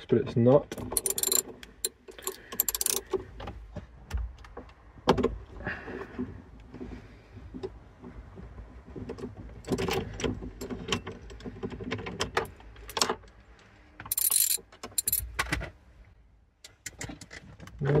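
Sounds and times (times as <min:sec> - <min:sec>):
metal tools rattling: 0:00.8 - 0:03.1, 0:14.1 - 0:15.3
ratchet clicking: 0:01.0 - 0:03.0, 0:14.1 - 0:15.2.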